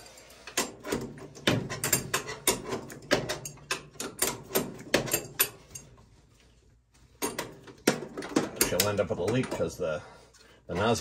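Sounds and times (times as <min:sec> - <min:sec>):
metal tools clinking: 0:01.4 - 0:06.2.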